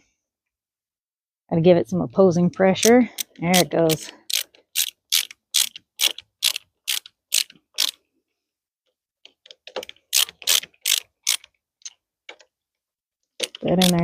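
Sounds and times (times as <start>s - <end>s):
hand screwdriver clicking: 2.8s - 8.0s, 9.7s - 11.5s, 13.4s - 14.0s.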